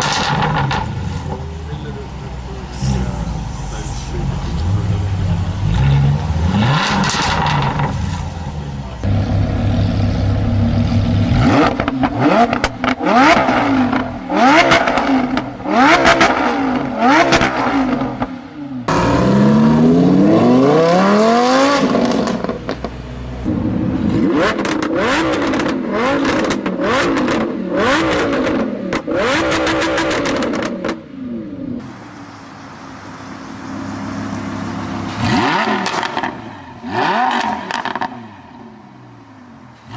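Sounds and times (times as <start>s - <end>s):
exhaust crackling and popping: 0.0s - 18.3s, 22.0s - 31.1s
car engine revving: 0.0s - 39.9s.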